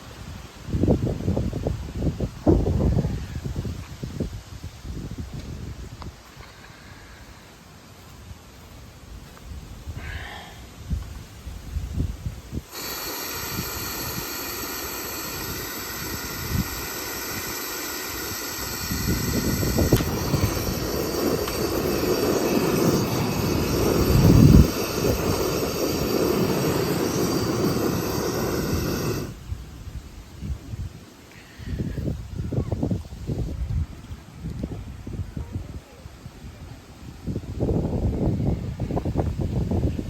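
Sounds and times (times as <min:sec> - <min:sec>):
gas burner hissing: 0:12.0 - 0:29.6.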